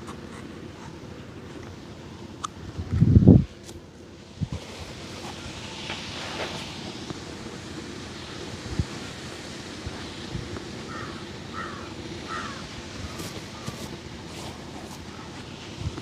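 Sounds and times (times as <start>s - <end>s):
outdoor background noise: 0.0s - 16.0s
crow cawing: 10.9s - 13.7s.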